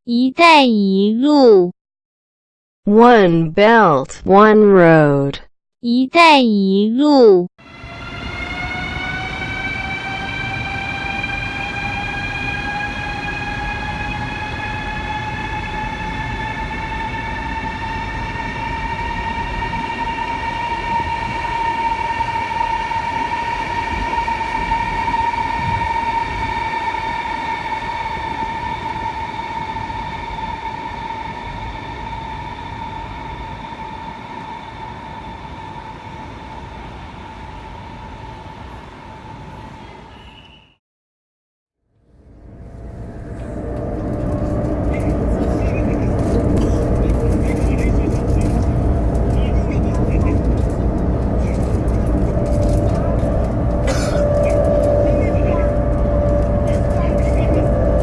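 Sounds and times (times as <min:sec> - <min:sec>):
train whine: 0:07.6 - 0:40.6, 0:42.0 - 0:58.0
train rumble: 0:42.1 - 0:58.0.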